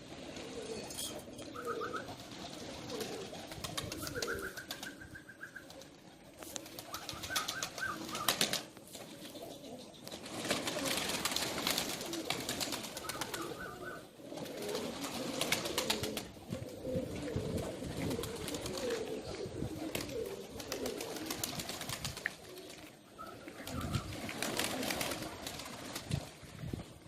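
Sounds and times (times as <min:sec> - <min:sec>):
pigeons cooing: 0:00.0 - 0:25.8
birds clicking and rustling: 0:00.5 - 0:05.0, 0:05.6 - 0:13.8.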